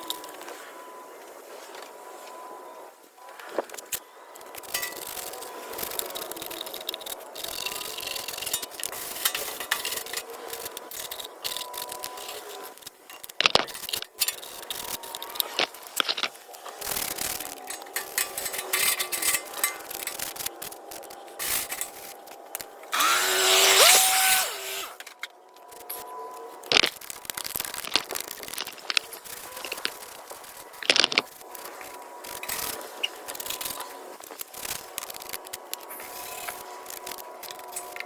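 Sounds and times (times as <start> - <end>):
wire brush scraping metal: 3.9 - 38.0
whir with rising pitch: 16.6 - 34.0.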